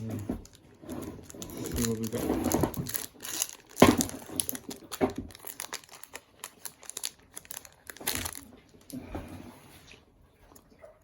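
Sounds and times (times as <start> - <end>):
foil wrapper crinkling: 0.4 - 9.0.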